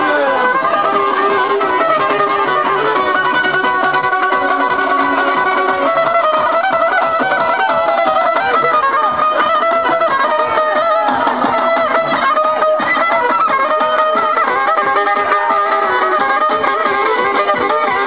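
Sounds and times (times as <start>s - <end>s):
plucked string instrument runs: 0.0s - 18.0s.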